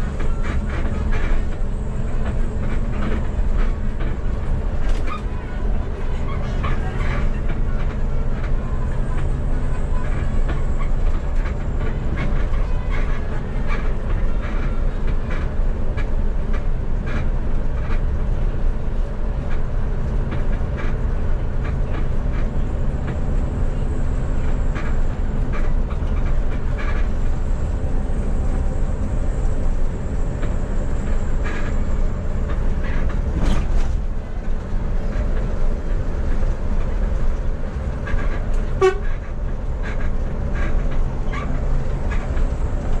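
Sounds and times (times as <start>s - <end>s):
bus engine hum: 0.0s - 43.0s
road rumble: 0.0s - 43.0s.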